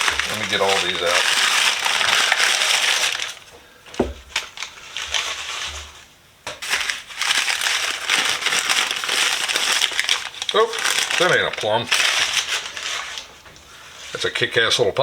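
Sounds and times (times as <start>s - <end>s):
packing material crinkling: 0.0s - 14.6s
short knock: 4.0s - 4.3s.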